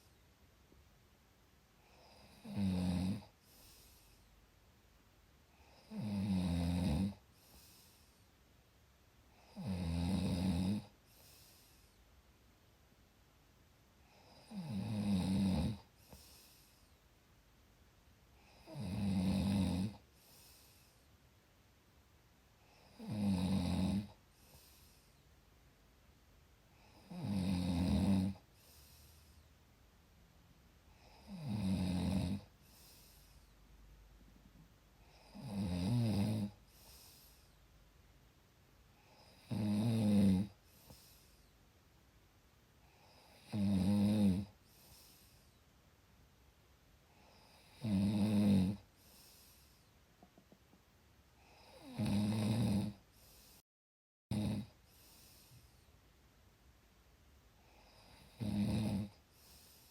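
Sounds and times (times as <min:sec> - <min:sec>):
rattling snores: 0:02.0 - 0:03.3, 0:05.7 - 0:07.2, 0:09.4 - 0:11.0, 0:14.2 - 0:15.9, 0:18.5 - 0:20.0, 0:22.8 - 0:24.2, 0:26.9 - 0:28.4, 0:31.0 - 0:33.1, 0:35.1 - 0:37.2, 0:39.2 - 0:41.0, 0:43.0 - 0:44.6, 0:47.2 - 0:48.9, 0:51.5 - 0:53.0, 0:54.3 - 0:54.8, 0:57.7 - 0:59.2
faint breath: 0:03.4 - 0:04.5, 0:07.3 - 0:08.4, 0:11.0 - 0:12.2, 0:16.0 - 0:17.1, 0:20.1 - 0:21.2, 0:24.3 - 0:25.4, 0:28.5 - 0:29.6, 0:32.5 - 0:33.7, 0:36.6 - 0:37.7, 0:40.6 - 0:41.6, 0:44.6 - 0:45.7, 0:48.9 - 0:50.4, 0:53.1 - 0:53.6, 0:54.8 - 0:56.0, 0:59.2 - 0:59.9.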